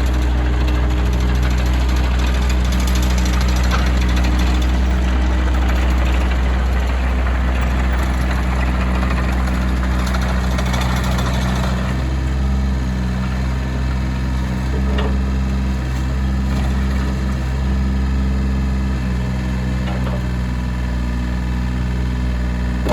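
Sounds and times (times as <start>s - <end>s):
diesel engine humming: 0.0s - 22.9s.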